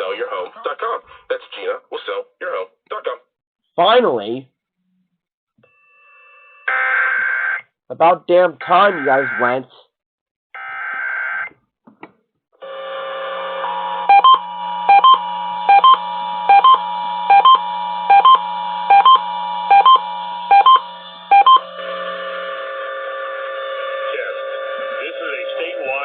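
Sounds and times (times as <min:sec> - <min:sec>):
radio background audio: 0:00.0 - 0:03.3, 0:08.7 - 0:09.8, 0:25.0 - 0:26.0
paired electronic beeps: 0:14.1 - 0:21.6.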